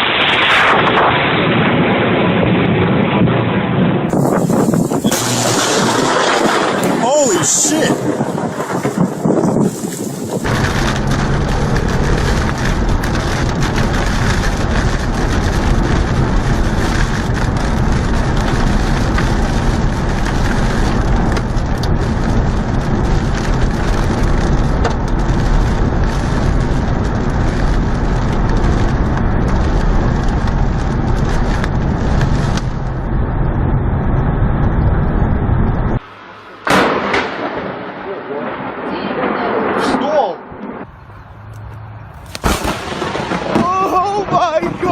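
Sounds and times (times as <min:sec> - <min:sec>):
wind buffeting microphone: 0:00.9 - 0:36.0.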